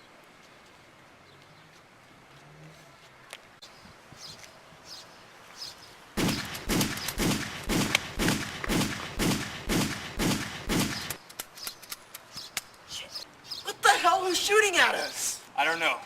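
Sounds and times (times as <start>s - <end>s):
gunshots: 6.2s - 11.2s.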